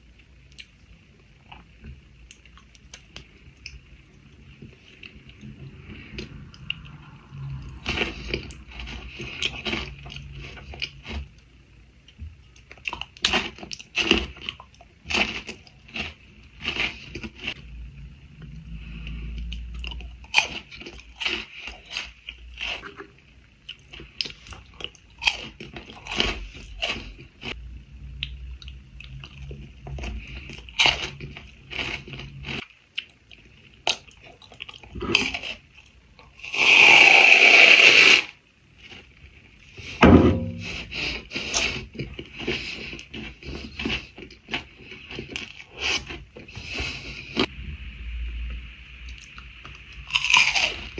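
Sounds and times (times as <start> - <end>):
crunchy chocolate chewing: 12.1 - 17.6, 19.1 - 27.6, 50.1 - 50.9.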